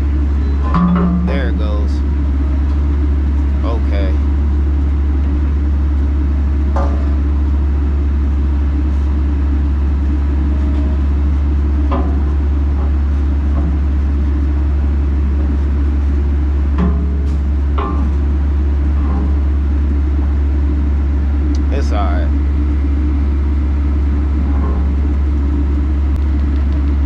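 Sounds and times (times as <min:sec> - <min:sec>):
excavator diesel engine droning: 0:00.0 - 0:27.0
machine knocks: 0:00.4 - 0:02.8.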